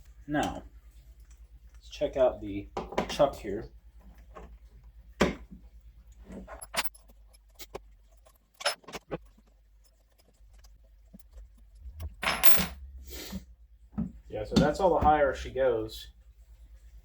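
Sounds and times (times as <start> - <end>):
metallic clicks and rattles: 6.3 - 12.8.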